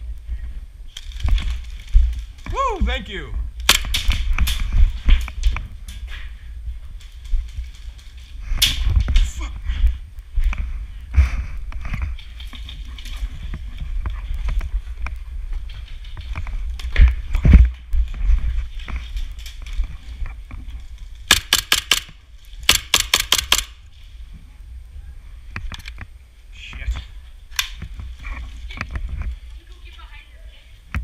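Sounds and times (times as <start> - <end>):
clicks and rustles of movement: 0.2 - 2.6, 3.6 - 23.6, 25.5 - 30.1
wind rumble on microphone: 3.3 - 21.2, 24.2 - 31.0
airsoft gunfire: 3.7 - 4.1, 21.3 - 22.1, 22.7 - 23.8.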